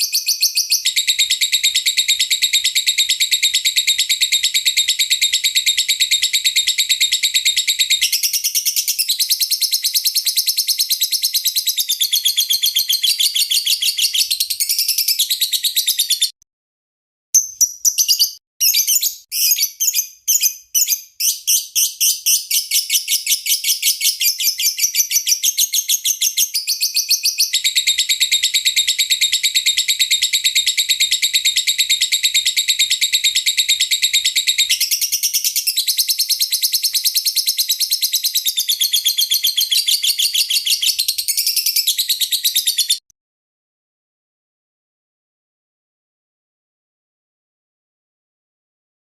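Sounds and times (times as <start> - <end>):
lovebird chirping and trilling: 0.0 - 16.4, 17.4 - 43.0.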